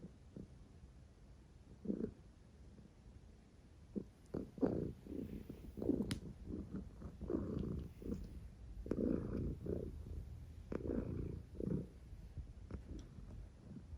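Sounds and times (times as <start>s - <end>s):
cat snoring: 1.7s - 2.2s, 4.0s - 13.9s
cat purring: 1.7s - 2.9s, 3.8s - 13.9s.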